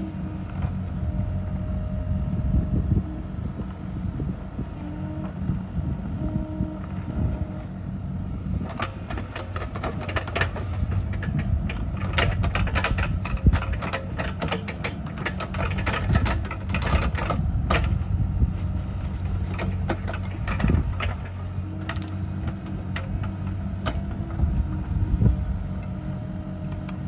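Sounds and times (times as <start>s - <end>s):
excavator diesel engine running: 0.0s - 27.0s
machine clicks and knocks: 8.7s - 18.0s.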